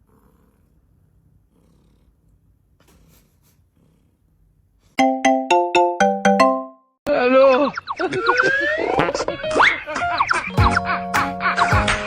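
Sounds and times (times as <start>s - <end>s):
cat purring: 0.0s - 5.0s
loud music with bright struck notes: 10.5s - 12.0s.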